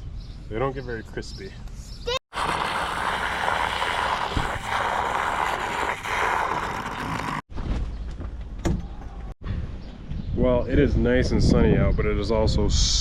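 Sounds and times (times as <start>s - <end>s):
low rumble of wind: 7.5s - 13.0s
wind buffeting microphone: 9.4s - 13.0s.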